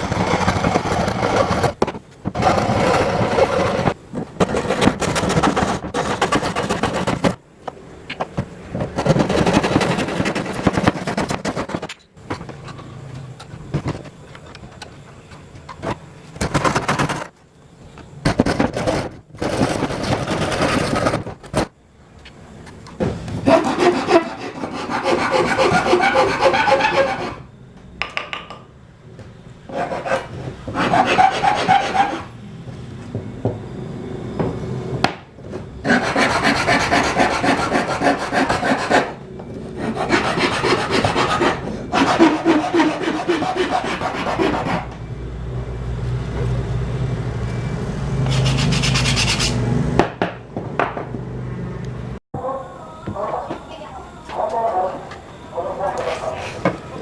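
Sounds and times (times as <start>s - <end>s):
tool rasping wood: 0.0s - 1.8s, 2.4s - 7.4s, 9.0s - 11.9s, 18.6s - 21.3s, 23.4s - 27.4s, 29.7s - 32.3s, 35.8s - 39.2s, 39.8s - 44.9s, 48.3s - 49.6s.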